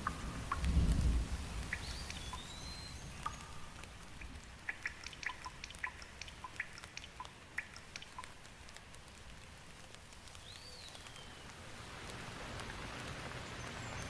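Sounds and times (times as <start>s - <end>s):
water drops plinking: 0.0s - 0.8s, 1.7s - 8.4s
soft rain hiss: 0.0s - 14.0s.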